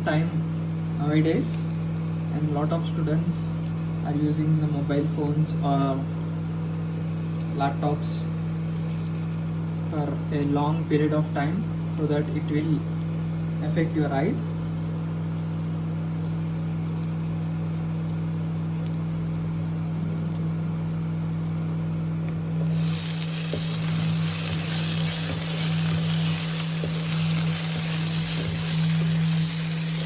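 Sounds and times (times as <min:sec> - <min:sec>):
induction cooktop hum: 0:00.0 - 0:30.0
food sizzling in hot oil: 0:22.6 - 0:30.0
stirring clicks: 0:22.7 - 0:30.0.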